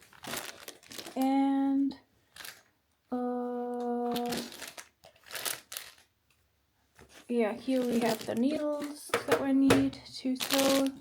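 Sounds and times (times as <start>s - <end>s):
woman speaking: 1.2s - 2.0s, 3.1s - 4.5s, 7.3s - 11.0s.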